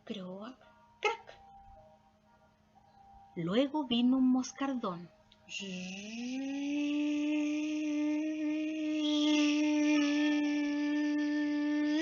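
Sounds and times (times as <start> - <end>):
woman imitating fly buzzing: 5.5 - 12.0.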